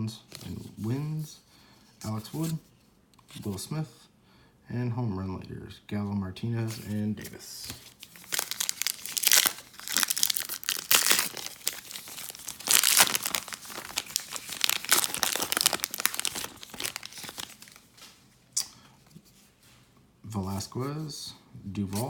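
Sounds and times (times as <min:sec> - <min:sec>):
wrapper tearing and crinkling: 0:07.9 - 0:17.9.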